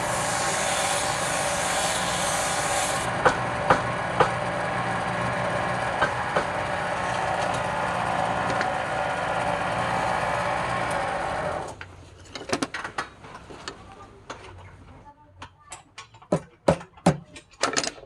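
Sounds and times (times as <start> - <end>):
wood rasping on lathe: 0.0 - 3.1
lathe motor hum: 0.0 - 11.7.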